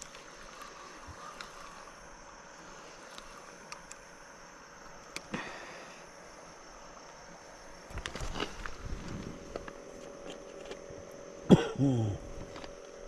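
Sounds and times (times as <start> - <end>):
outdoor background hiss: 0.0 - 13.0
light clicks: 3.1 - 4.0.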